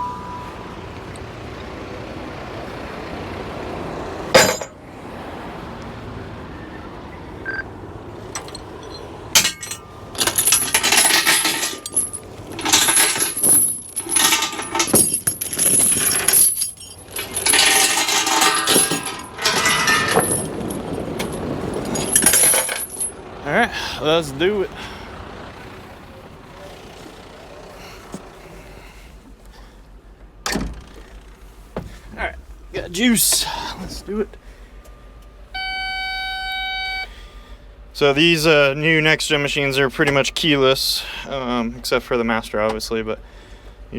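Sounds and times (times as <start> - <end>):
metallic clinking and rattling: 4.3 - 4.8, 8.2 - 23.2.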